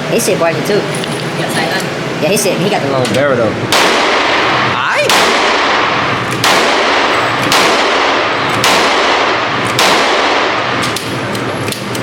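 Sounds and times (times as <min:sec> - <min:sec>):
loud echoing gunshots: 0:03.6 - 0:10.9
fainter sharper gunshots: 0:05.0 - 0:10.6.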